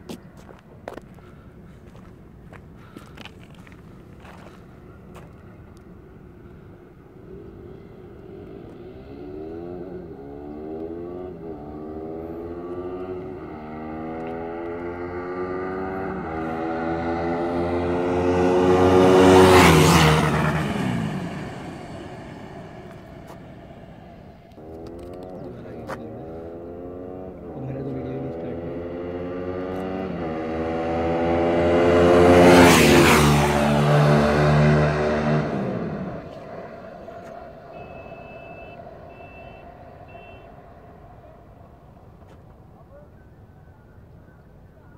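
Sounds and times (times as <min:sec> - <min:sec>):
motorcycle engine accelerating: 0:02.8 - 0:44.9.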